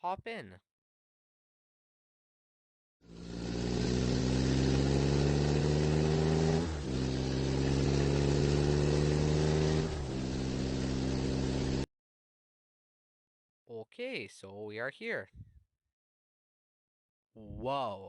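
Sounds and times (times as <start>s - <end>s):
car engine accelerating: 3.0s - 11.9s.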